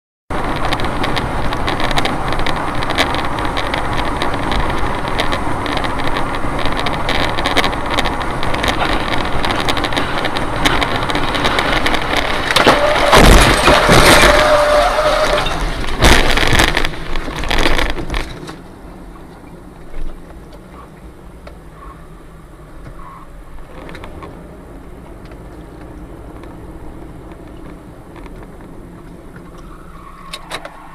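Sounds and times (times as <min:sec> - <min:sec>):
heavy impacts: 0:00.3 - 0:19.3
car road and engine noise: 0:00.3 - 0:30.9
loud crash with breaking: 0:12.5 - 0:17.9.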